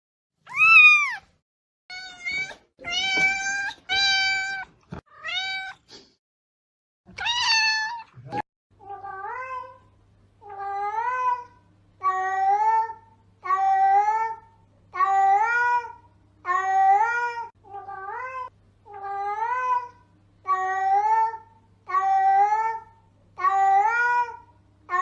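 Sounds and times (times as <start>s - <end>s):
cat meowing: 0.5s - 1.3s, 1.9s - 5.9s, 7.1s - 9.8s.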